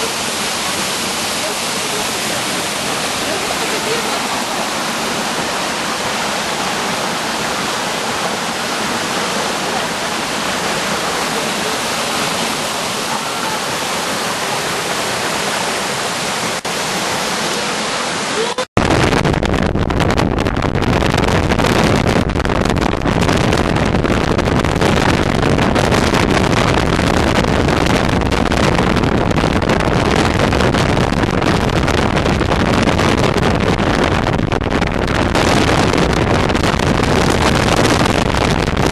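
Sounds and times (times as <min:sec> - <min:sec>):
waterfall rushing: 0:00.0 - 0:18.7, 0:35.1 - 0:38.9.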